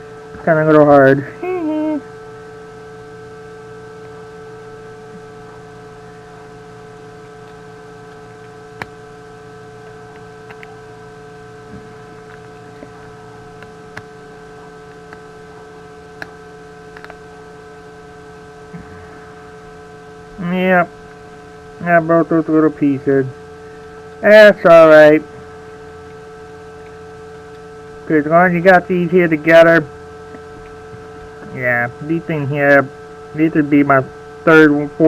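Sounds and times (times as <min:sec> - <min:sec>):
three d printer humming: 0:00.0 - 0:35.0.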